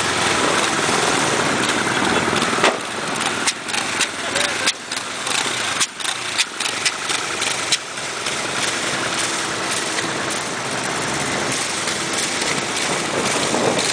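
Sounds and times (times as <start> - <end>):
motorcycle engines idling: 0.0 - 13.9
sharp clicks: 2.4 - 7.9.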